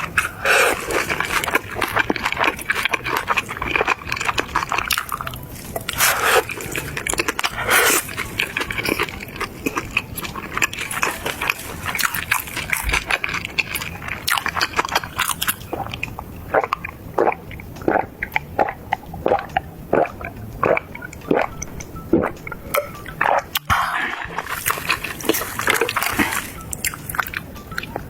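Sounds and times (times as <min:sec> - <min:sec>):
crunching crispy food: 0:00.0 - 0:17.4, 0:23.2 - 0:28.0
wet chewing: 0:00.0 - 0:28.0.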